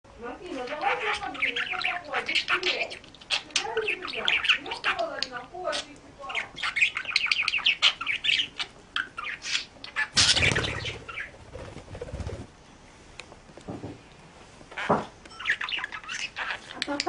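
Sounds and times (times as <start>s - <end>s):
parrot chirping: 0.5s - 11.4s, 14.8s - 17.0s
rustling noise: 10.4s - 14.8s.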